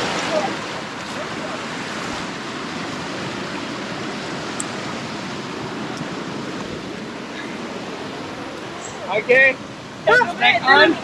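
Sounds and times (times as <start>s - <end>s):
waterfall rushing water: 0.0s - 11.0s.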